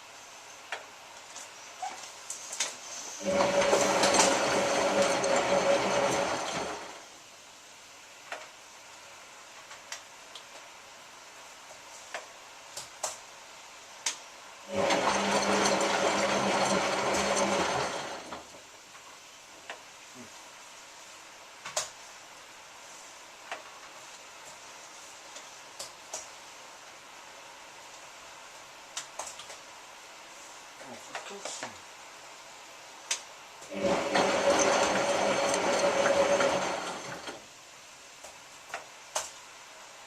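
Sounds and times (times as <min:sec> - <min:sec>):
washing machine motor running: 0:03.2 - 0:07.0, 0:14.7 - 0:18.5, 0:33.7 - 0:37.4.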